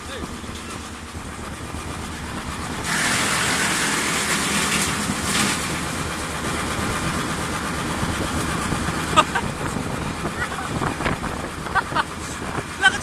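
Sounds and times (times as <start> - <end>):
wood chipper running: 0.0 - 13.0.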